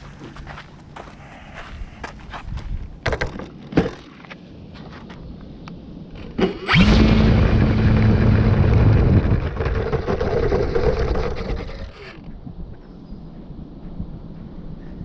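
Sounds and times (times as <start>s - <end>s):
electric motor and propeller humming: 6.2s - 12.4s
rushing air: 6.4s - 12.7s.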